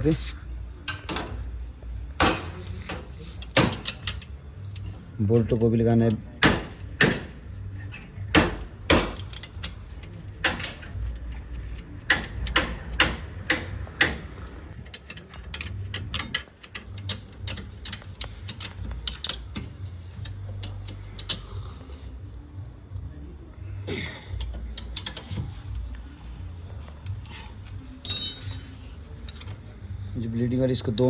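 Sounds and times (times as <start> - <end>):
low steady hum: 0.0 - 31.0
ratchet wrench clicking: 3.4 - 4.3, 10.5 - 21.8, 24.4 - 25.4, 29.2 - 29.7.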